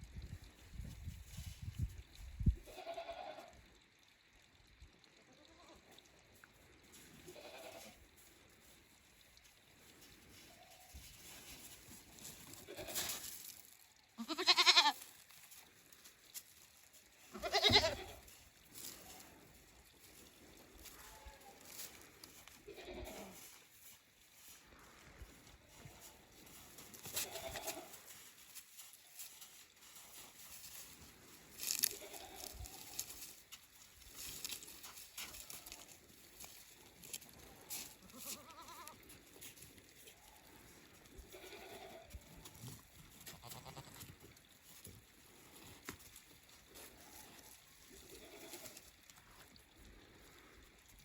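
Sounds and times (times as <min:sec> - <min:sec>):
goats bleating: 0:02.7 - 0:03.6, 0:07.2 - 0:08.0, 0:12.5 - 0:13.2, 0:14.2 - 0:15.1, 0:17.3 - 0:19.2, 0:22.5 - 0:23.6, 0:27.0 - 0:28.2, 0:31.6 - 0:33.1, 0:38.0 - 0:39.1, 0:41.2 - 0:42.4, 0:43.2 - 0:44.0, 0:47.3 - 0:48.8.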